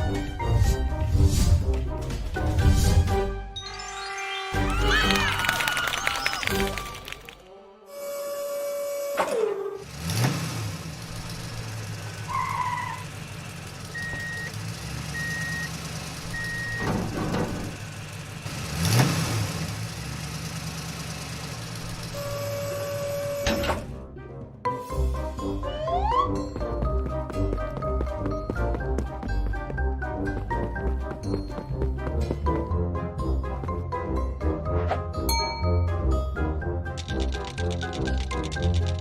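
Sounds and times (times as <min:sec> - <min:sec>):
cartoon vehicle engine running: 0:09.8 - 0:23.9, 0:25.4 - 0:29.5, 0:36.9 - 0:39.0.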